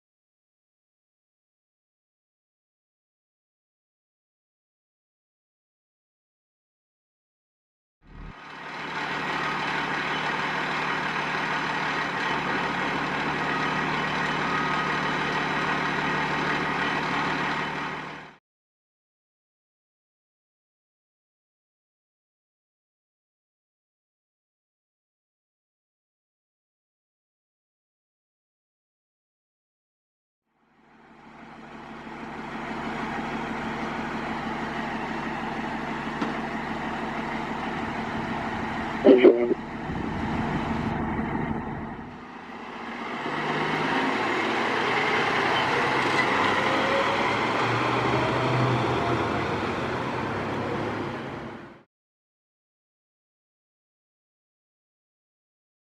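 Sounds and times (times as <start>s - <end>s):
diesel engine running: 8.0s - 18.4s, 30.6s - 51.8s.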